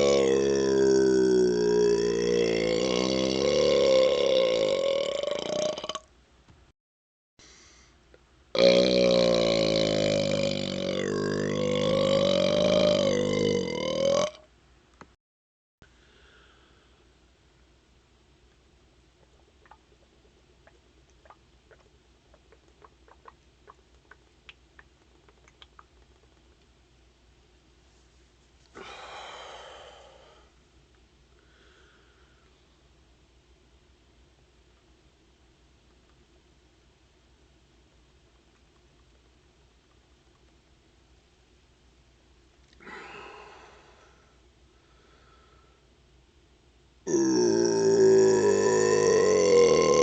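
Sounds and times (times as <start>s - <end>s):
man burping: 0.0s - 6.0s, 8.6s - 14.4s, 42.7s - 43.3s, 47.1s - 50.0s
low steady hum: 15.8s - 50.0s.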